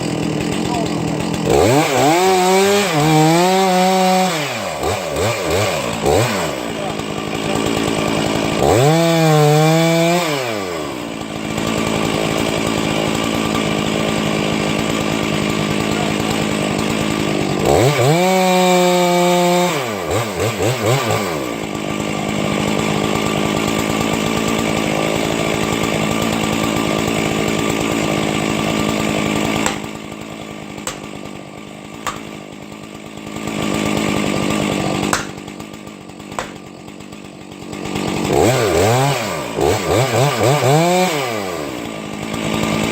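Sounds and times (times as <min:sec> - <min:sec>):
chainsaw cutting: 0:00.0 - 0:42.9
sharp knocks: 0:29.6 - 0:30.0, 0:30.8 - 0:31.2, 0:32.0 - 0:32.4, 0:35.1 - 0:35.6, 0:36.3 - 0:36.7.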